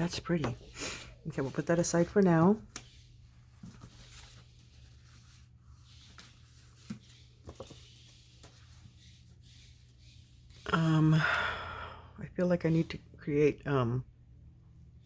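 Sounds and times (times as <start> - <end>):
paper rustling and tapping: 6.1 - 8.7.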